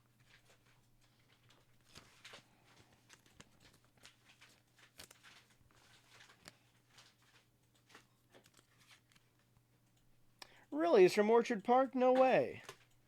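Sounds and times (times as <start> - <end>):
trading cards clicking and rustling: 0.2 - 9.6.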